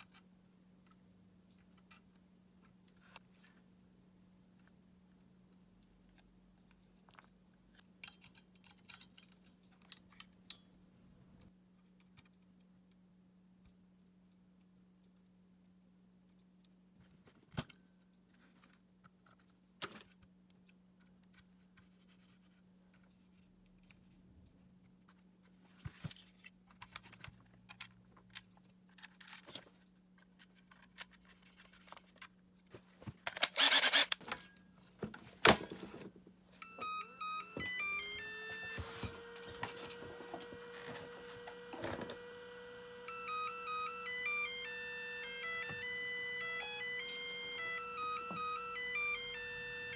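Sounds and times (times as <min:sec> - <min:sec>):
small motor running: 0:33.4 - 0:34.2, 0:37.2 - 0:49.9.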